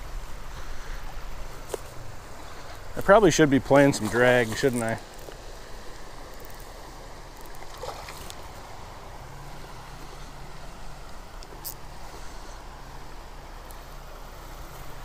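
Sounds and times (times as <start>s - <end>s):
river water over rocks: 0.0s - 15.0s.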